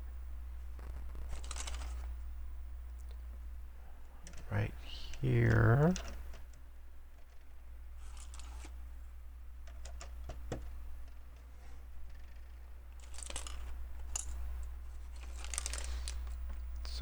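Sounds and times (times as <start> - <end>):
steady low hum: 0.0 - 17.0
plastic bricks clicking together: 12.1 - 14.4, 15.2 - 16.4.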